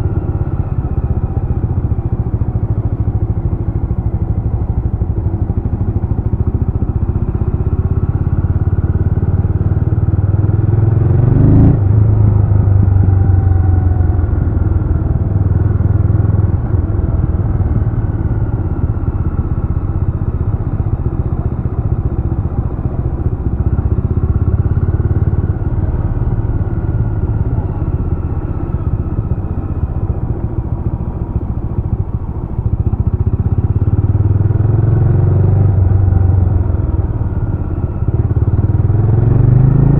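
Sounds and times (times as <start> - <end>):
single-cylinder engine revving: 34.2 - 39.9.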